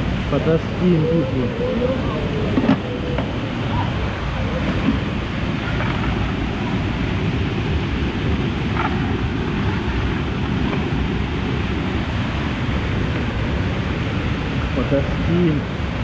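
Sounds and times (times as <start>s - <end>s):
waterfall rushing: 0.0s - 16.0s.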